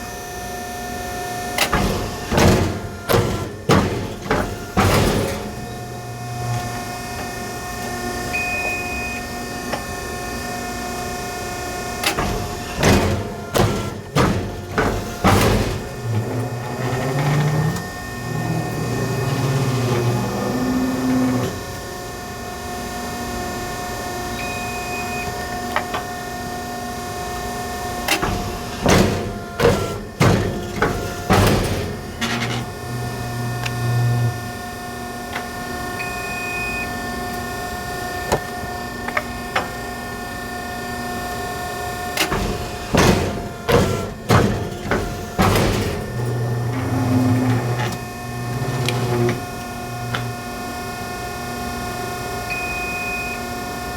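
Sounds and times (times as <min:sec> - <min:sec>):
paper cutter knocks and thuds: 0:12.1 - 0:21.6, 0:42.2 - 0:50.3
machine hum: 0:12.6 - 0:22.3, 0:29.1 - 0:35.8, 0:42.4 - 0:52.2
low hydraulic drone: 0:14.4 - 0:21.8, 0:44.8 - 0:50.7.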